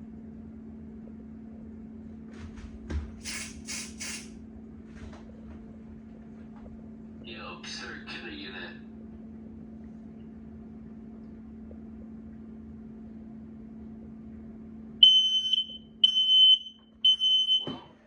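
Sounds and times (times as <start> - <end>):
steady low hum: 0.0 - 18.0
smoke alarm beeping: 15.0 - 17.8.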